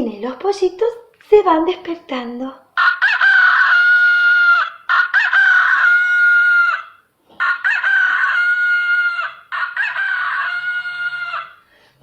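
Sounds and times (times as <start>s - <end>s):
recorded rooster crowing: 2.8s - 12.0s.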